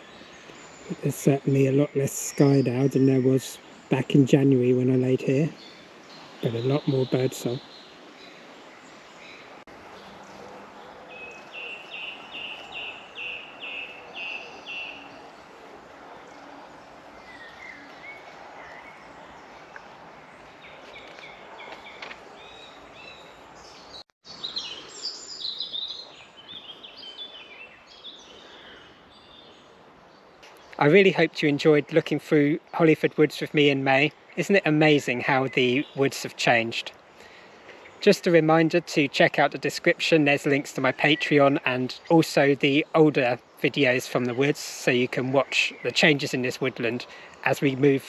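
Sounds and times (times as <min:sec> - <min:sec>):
bird chirps: 0:00.0 - 0:15.5, 0:16.1 - 0:38.6
soft steady background hiss: 0:00.0 - 0:21.2, 0:22.0 - 0:48.0
several birds singing: 0:00.0 - 0:48.0.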